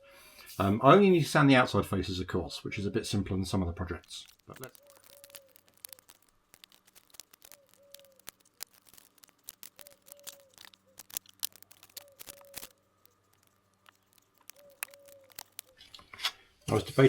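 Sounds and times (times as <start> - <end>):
wood pieces clicking: 4.1 - 16.4.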